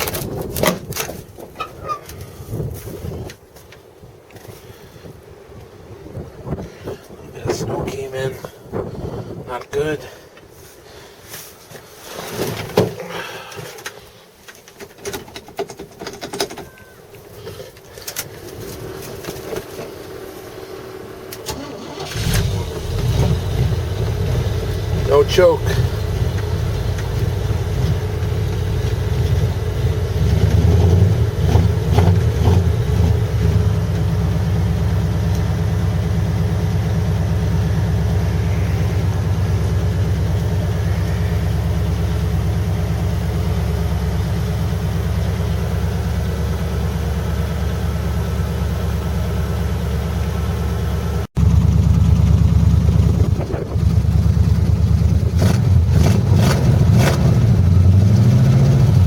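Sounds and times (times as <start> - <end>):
pickup truck engine idling: 20.1 - 55.9.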